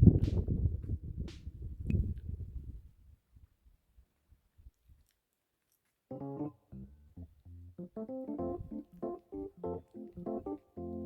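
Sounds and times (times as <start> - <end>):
keyboard instrument music: 6.1 - 11.0.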